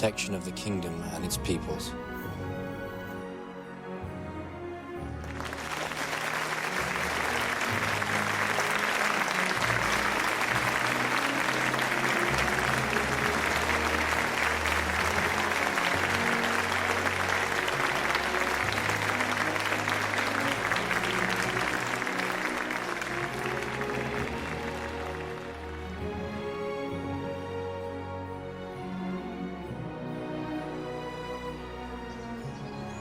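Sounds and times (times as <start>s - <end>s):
music of slow low notes: 0.0s - 33.0s
large crowd applauding: 5.0s - 28.0s.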